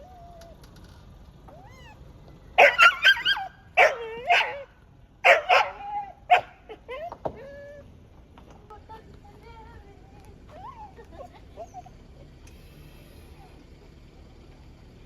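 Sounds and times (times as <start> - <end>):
dog whining: 0.0 - 0.7, 1.5 - 2.0, 2.6 - 4.7, 5.3 - 7.9
dog barking in high yelps: 2.6 - 7.0.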